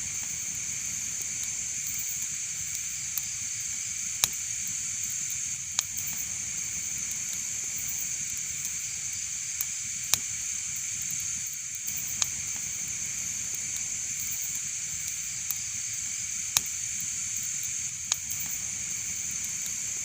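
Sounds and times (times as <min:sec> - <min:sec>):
fire crackling pops: 0:00.0 - 0:20.0
fireplace fire hissing: 0:00.0 - 0:20.0.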